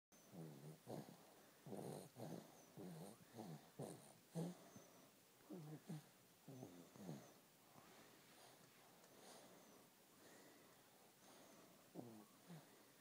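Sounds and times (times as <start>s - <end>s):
baby snoring: 0.3s - 4.8s, 5.5s - 7.4s, 12.0s - 12.7s.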